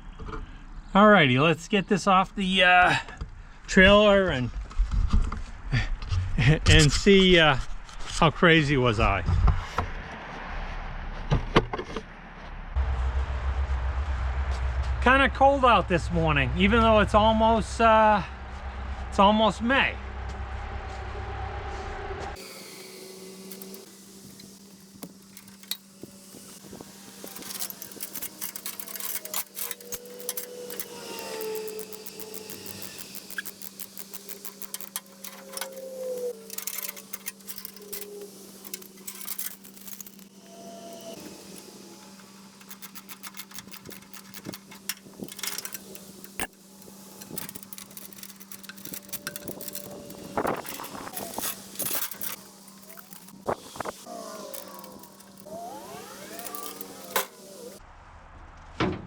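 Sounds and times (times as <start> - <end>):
steady low hum: 12.6 - 57.8
sliding squeaks: 23.4 - 57.8
metal clinking and knocking: 23.5 - 26.6, 27.2 - 55.5.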